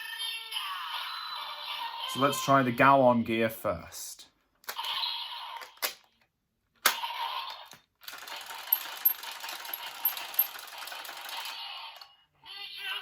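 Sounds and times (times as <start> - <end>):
electronic toy sound effects: 4.7 - 5.8, 11.3 - 13.0.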